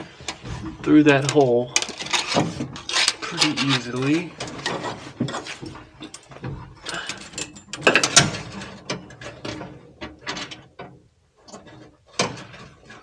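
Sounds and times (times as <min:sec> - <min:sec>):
hose scraping through grommet: 0:00.5 - 0:05.8.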